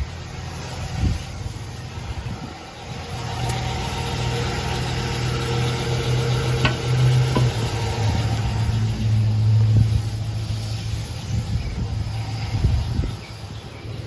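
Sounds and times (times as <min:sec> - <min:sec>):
pickup engine idling: 0:00.0 - 0:10.2.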